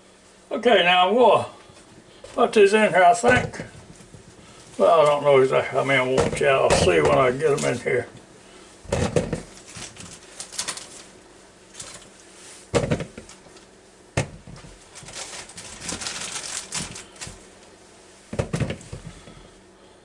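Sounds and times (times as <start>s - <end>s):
soft rustling and clatter: 14.4s - 17.5s.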